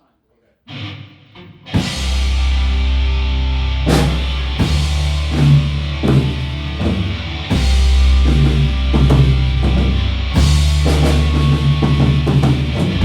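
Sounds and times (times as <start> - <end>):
rock band playing: 0.7 - 13.0
held bass notes: 1.8 - 13.0
drum hits: 3.9 - 13.0.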